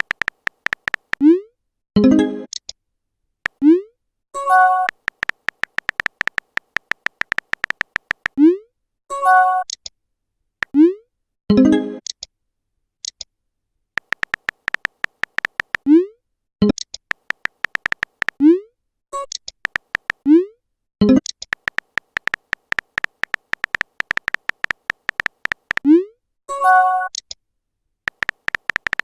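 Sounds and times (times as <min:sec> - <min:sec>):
typing clicks: 0:00.0 - 0:01.2, 0:04.5 - 0:08.4, 0:14.0 - 0:15.8, 0:16.6 - 0:18.4, 0:19.3 - 0:20.2, 0:21.2 - 0:25.8, 0:28.1 - 0:29.0.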